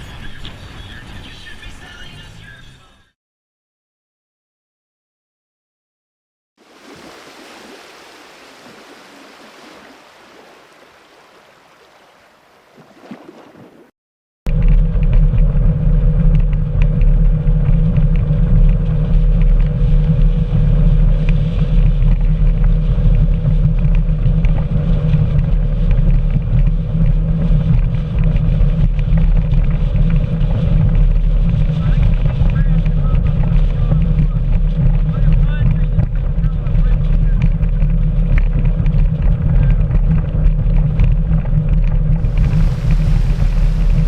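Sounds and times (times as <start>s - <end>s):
motorboat engine rumbling: 14.5s - 44.0s.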